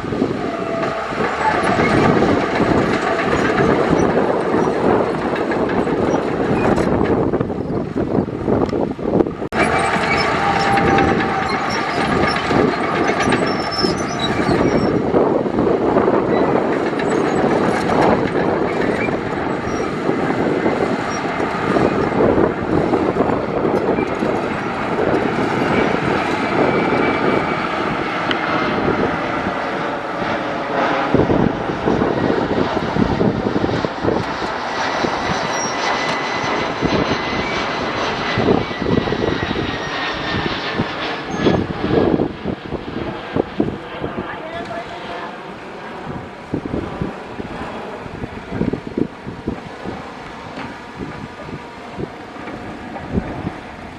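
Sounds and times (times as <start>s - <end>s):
diesel engines under load: 0.0s - 40.5s, 41.2s - 53.9s
steel clanking and rattling: 0.5s - 7.9s, 9.5s - 27.6s.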